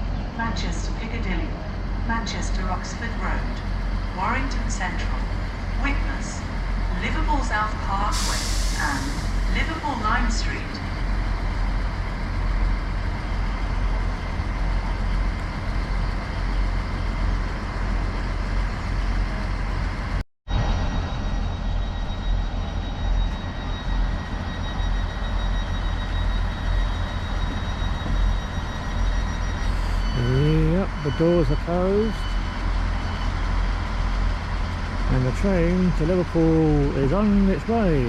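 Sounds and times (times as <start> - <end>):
diesel train engine idling: 0.0 - 38.0
faint whine: 20.5 - 33.3.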